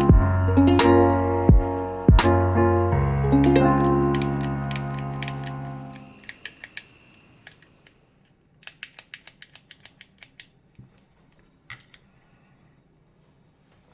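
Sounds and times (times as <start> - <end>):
bicycle shifter clicks: 3.4 - 7.7, 8.6 - 10.5.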